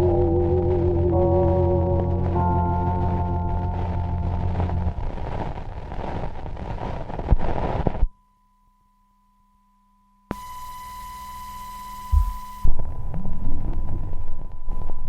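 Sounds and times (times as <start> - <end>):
high electronic test tone: 12.0 - 12.7
thump: 12.2 - 12.5.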